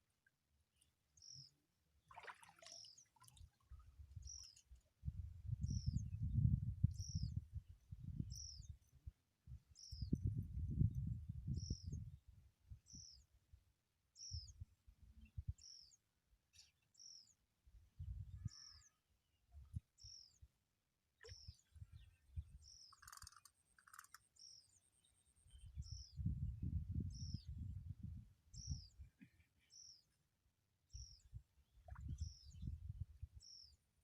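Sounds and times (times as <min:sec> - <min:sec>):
small bird chirping: 0:22.7 - 0:24.8.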